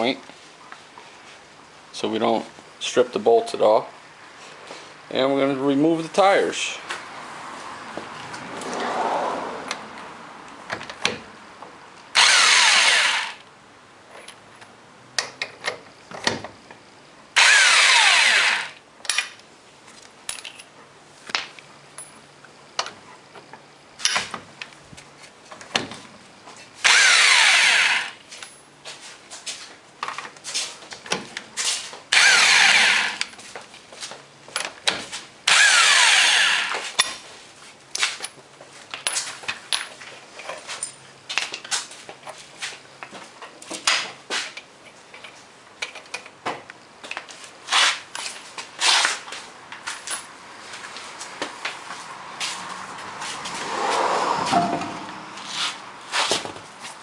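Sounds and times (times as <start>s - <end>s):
impact wrench spinning lug nuts: 12.2s - 13.4s, 17.4s - 18.8s, 26.8s - 28.2s, 32.1s - 33.3s, 35.5s - 36.8s
clinks of nuts and tools: 20.2s - 20.7s.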